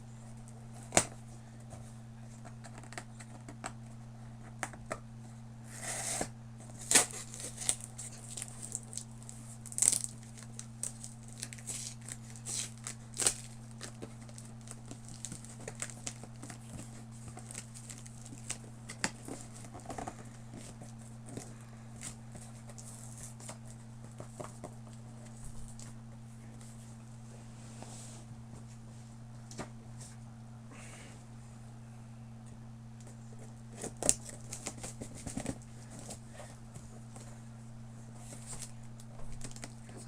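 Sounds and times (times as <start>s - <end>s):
tape tearing: 5.8s - 16.6s
cardboard and packing crinkling: 6.6s - 26.0s, 33.2s - 37.3s, 38.2s - 40.0s.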